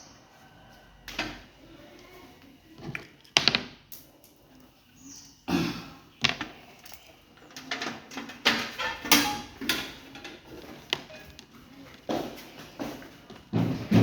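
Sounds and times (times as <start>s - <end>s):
hard objects knocking and clicking: 2.8s - 3.8s, 6.2s - 14.0s.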